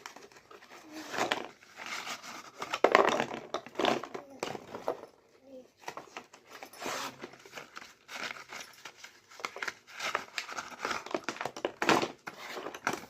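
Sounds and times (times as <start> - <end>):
small clicks and scrapes: 5.8 - 13.0
packaging crinkling and tearing: 6.8 - 13.0.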